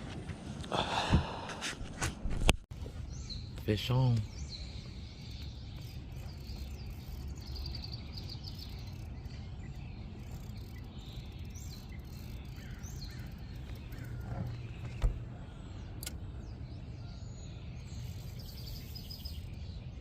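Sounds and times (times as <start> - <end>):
birds chirping: 2.7 - 20.0
bird trill: 3.1 - 15.0, 17.0 - 20.0.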